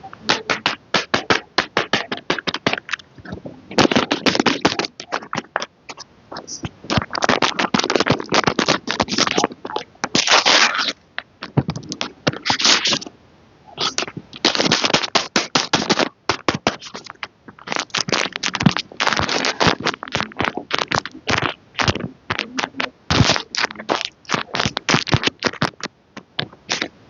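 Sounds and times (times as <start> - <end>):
packaging crinkling: 13.9 - 25.9.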